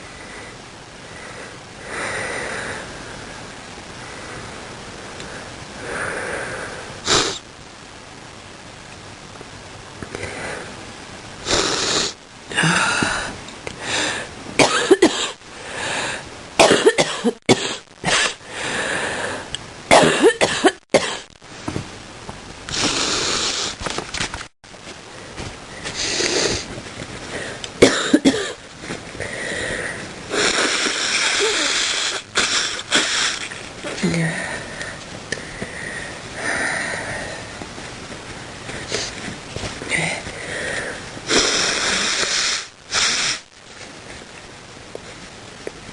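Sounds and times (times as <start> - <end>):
person coughing: 14.6 - 15.4, 16.6 - 18.4, 19.9 - 21.3, 27.8 - 28.6.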